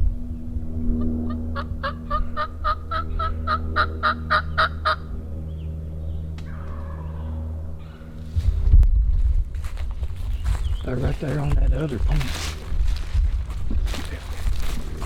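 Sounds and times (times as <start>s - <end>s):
turkey call yelps: 1.0s - 5.0s, 6.5s - 8.0s.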